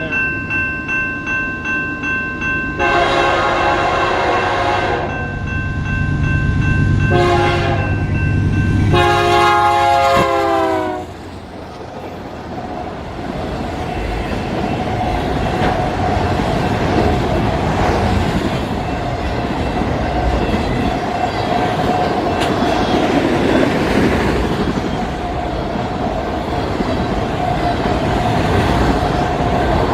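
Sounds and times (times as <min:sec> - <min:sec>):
train horn blasts: 0:02.8 - 0:05.2, 0:07.1 - 0:08.1, 0:08.9 - 0:11.2
train wheels rumbling over rails: 0:05.7 - 0:29.9.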